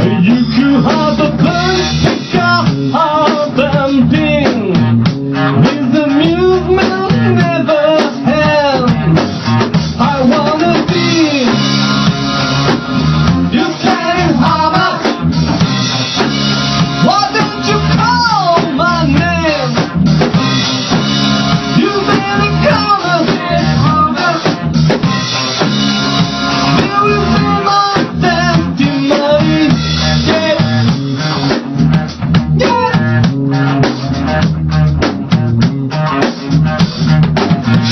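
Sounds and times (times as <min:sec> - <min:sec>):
rock band playing: 0:00.0 - 0:37.9
gliding melody line: 0:25.2 - 0:27.8.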